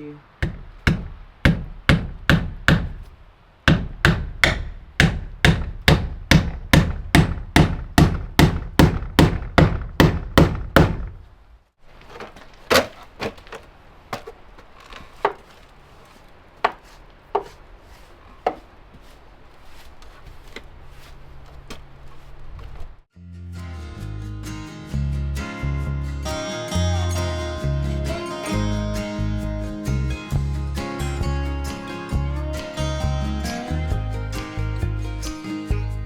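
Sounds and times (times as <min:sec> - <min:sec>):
hammer driving nails into wood: 0:00.4 - 0:03.1, 0:03.7 - 0:11.2.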